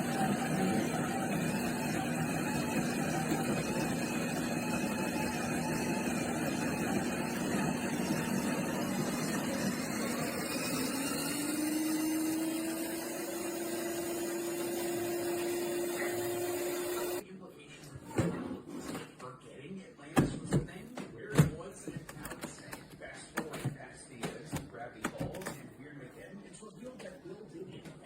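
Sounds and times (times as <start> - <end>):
small motor humming: 0.0 - 17.2.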